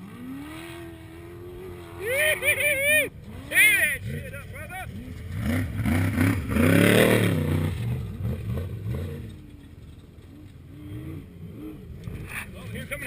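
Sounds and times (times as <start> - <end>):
race vehicle engine revving past: 0.0 - 9.4.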